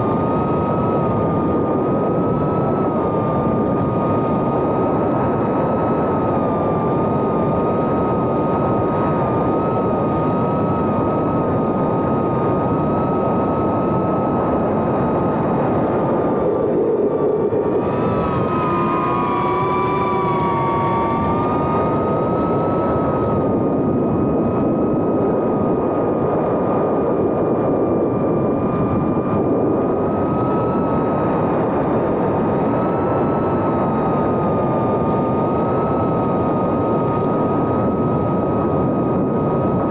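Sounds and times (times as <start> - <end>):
drone motors whining: 9.4 - 26.5.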